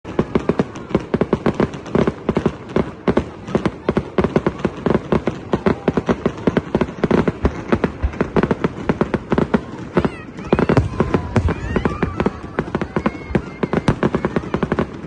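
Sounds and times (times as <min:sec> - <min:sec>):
fireworks bangs and cracks: 0:00.0 - 0:15.0.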